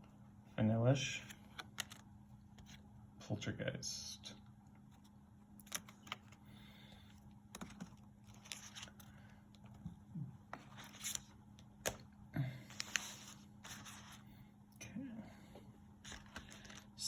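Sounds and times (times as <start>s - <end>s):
faint steady hum: 0.0s - 17.0s
cards tapping and sliding: 1.2s - 2.0s, 7.5s - 9.8s, 10.5s - 12.1s.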